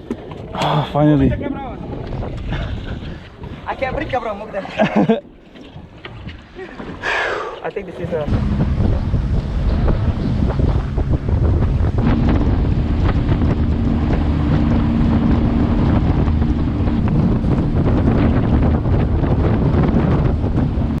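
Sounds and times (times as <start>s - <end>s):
wind buffeting microphone: 0.0s - 7.1s, 7.8s - 21.0s
waves washing: 1.0s - 21.0s
crackles and splashes: 8.2s - 21.0s
steady low hum: 8.3s - 21.0s.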